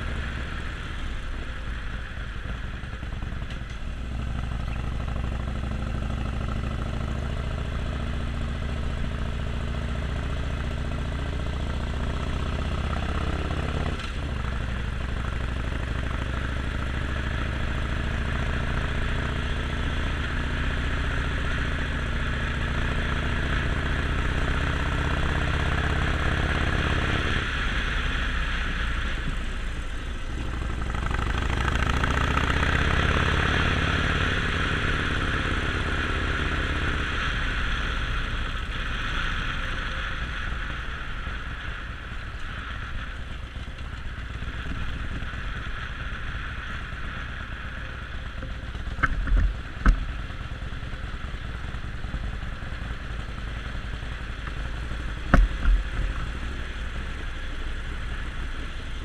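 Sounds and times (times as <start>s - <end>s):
motorcycle engine running: 0.0s - 59.0s
steady rushing noise: 0.0s - 59.0s.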